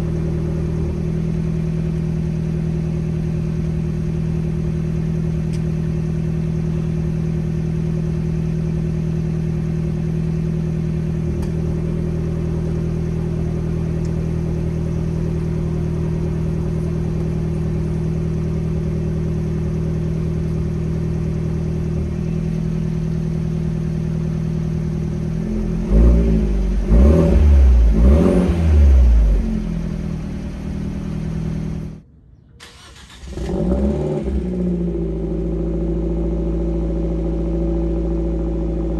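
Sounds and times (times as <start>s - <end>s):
car engine idling and revving: 0.0s - 38.9s.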